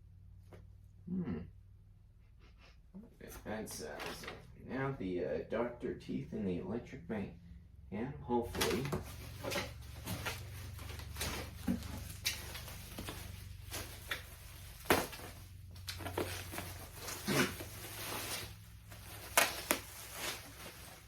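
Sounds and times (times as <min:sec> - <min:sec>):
low steady hum: 0:00.0 - 0:21.0
packaging rustling: 0:08.5 - 0:21.0.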